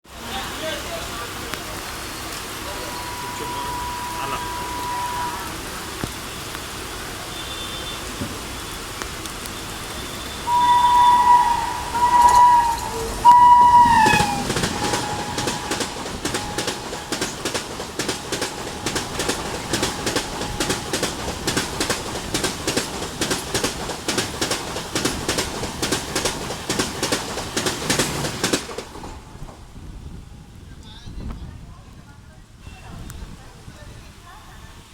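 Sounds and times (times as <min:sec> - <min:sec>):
train horn: 0:02.6 - 0:06.5, 0:07.2 - 0:08.7, 0:09.7 - 0:22.2
train wheels clacking over rail joints: 0:10.5 - 0:29.9.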